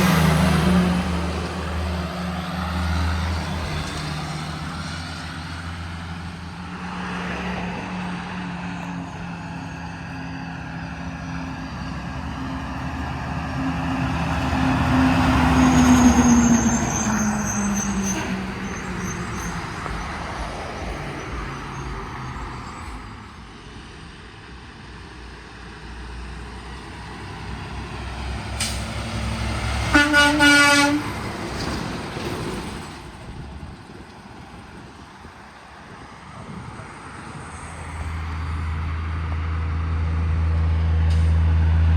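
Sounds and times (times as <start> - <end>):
trucks passing: 0.0 - 41.9
vehicle horn: 29.9 - 31.1.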